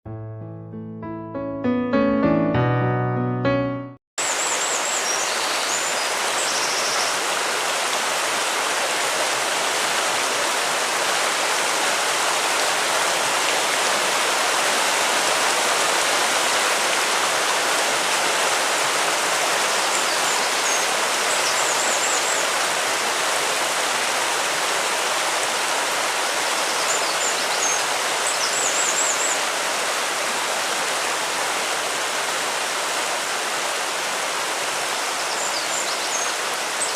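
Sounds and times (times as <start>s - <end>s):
piano music: 0.1s - 4.0s
stream rushing water: 4.2s - 36.9s.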